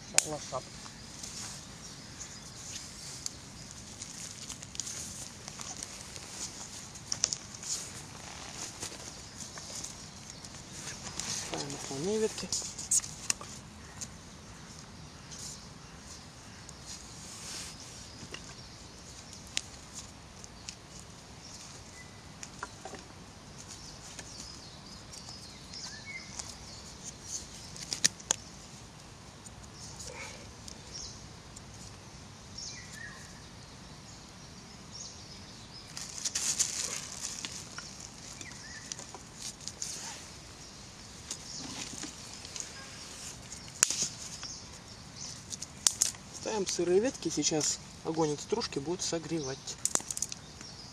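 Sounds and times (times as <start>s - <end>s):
branches rustling: 0.0s - 33.5s, 35.2s - 50.9s
small bird chirping: 29.7s - 50.9s.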